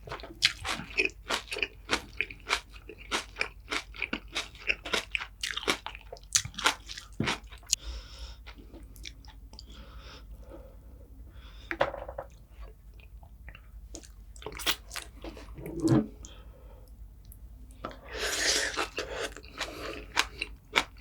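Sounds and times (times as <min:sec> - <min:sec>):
crunchy chewing: 0:00.0 - 0:07.8, 0:18.1 - 0:21.0.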